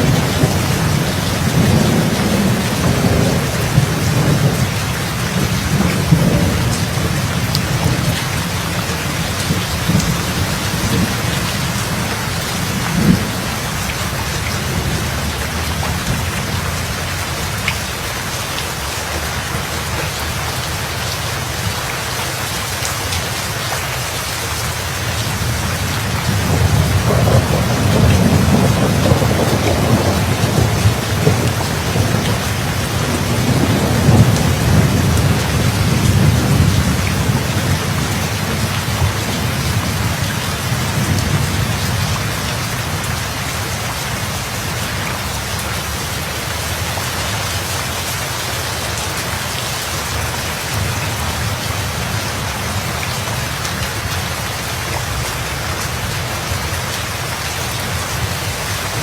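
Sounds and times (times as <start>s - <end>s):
rolling thunder rumble: 0.0s - 17.7s, 25.1s - 46.0s
heavy rain falling: 0.0s - 59.0s.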